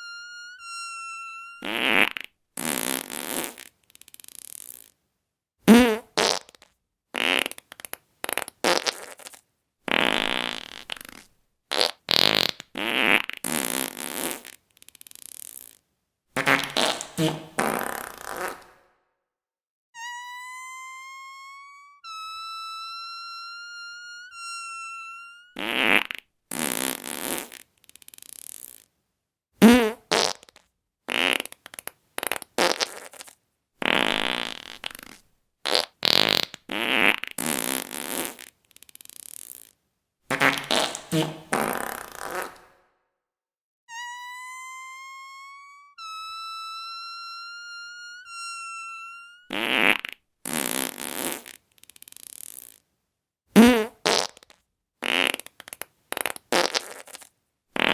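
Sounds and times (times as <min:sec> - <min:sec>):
plain high tone: 0:00.0 - 0:01.8, 0:20.0 - 0:25.6, 0:43.9 - 0:49.6
fart sounds: 0:00.6 - 0:05.0, 0:05.7 - 0:15.8, 0:16.4 - 0:18.9, 0:25.4 - 0:28.9, 0:29.6 - 0:42.8, 0:49.3 - 0:52.8, 0:53.6 - 0:57.9.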